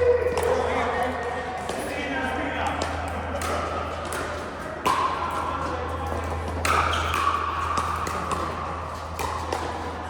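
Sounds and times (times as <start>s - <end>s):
steady low hum: 0.0s - 10.0s
ball bouncing: 2.6s - 10.0s
paddles hitting plastic ball: 2.6s - 10.0s.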